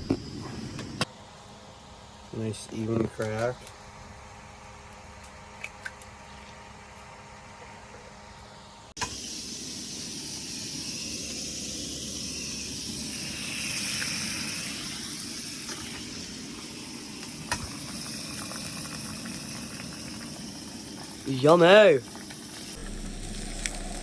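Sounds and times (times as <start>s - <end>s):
food sizzling in a hot pan: 9.0s - 23.6s.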